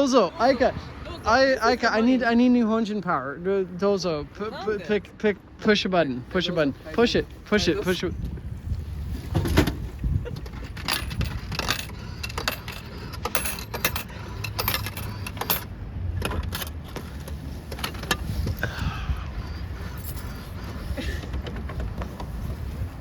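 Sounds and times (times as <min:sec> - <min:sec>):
low wind rumble: 0:00.0 - 0:23.0
vending machine clicks and clinks: 0:10.4 - 0:18.3.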